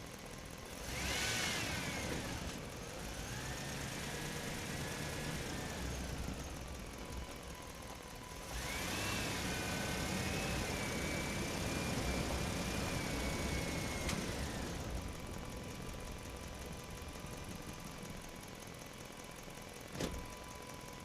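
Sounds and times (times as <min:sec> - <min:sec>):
vehicle engine rumbling: 0:00.0 - 0:21.0.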